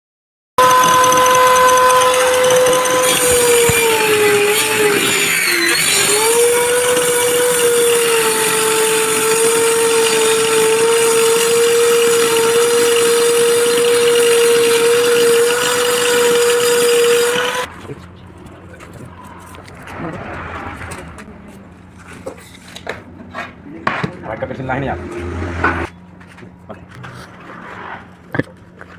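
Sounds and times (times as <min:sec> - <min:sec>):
power tool motor whining: 0:00.6 - 0:17.7.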